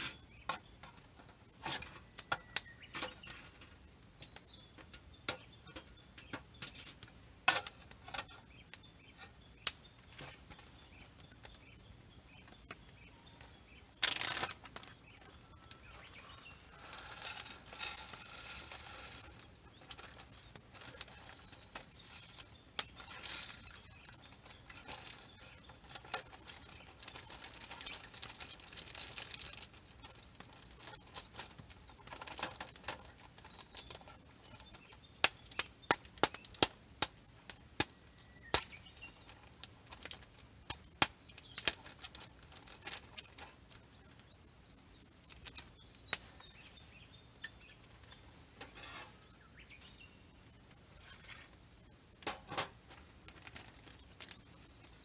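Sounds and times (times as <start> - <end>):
campfire crackling and popping: 2.0 - 3.0, 3.6 - 46.6
rustling: 38.6 - 55.0.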